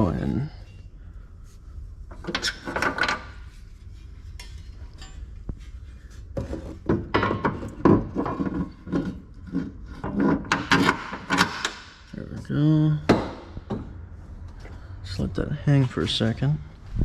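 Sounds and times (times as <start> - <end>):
metal bracket clanking and knocking: 6.4 - 9.3.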